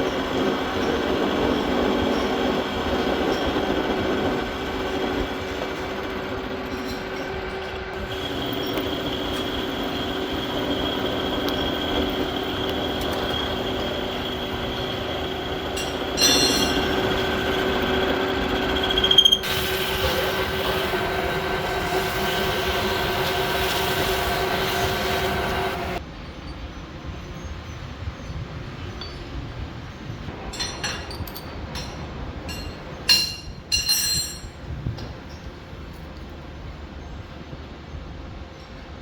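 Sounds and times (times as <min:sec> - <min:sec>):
machine drone with high whine: 0:00.0 - 0:26.5.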